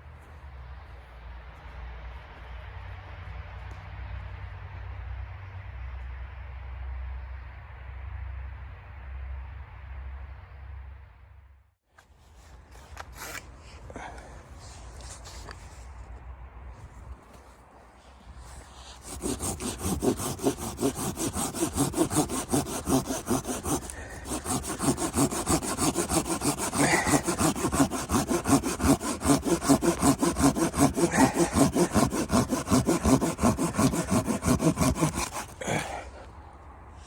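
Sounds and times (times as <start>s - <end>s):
hand saw cutting wood: 12.9s - 14.2s, 18.5s - 36.3s.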